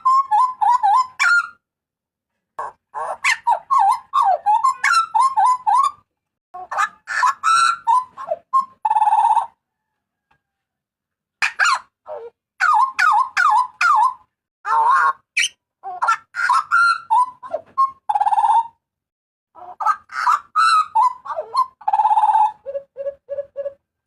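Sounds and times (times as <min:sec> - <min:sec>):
butcherbird calling: 0:02.6 - 0:06.0, 0:12.6 - 0:18.8, 0:19.6 - 0:23.8.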